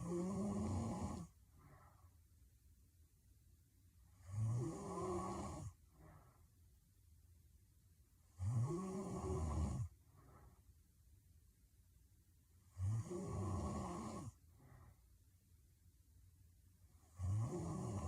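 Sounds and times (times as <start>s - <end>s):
woman snoring heavily: 0.0s - 1.3s, 4.2s - 5.8s, 8.4s - 9.9s, 12.7s - 14.4s, 17.1s - 18.0s
soft breath: 1.1s - 2.4s, 5.7s - 6.7s, 9.8s - 10.8s, 14.3s - 15.3s.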